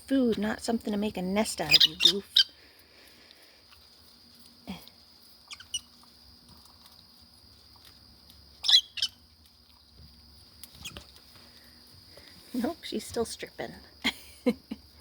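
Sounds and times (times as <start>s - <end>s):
lovebirds chirping: 0.9s - 2.7s, 5.2s - 6.1s, 8.6s - 10.0s.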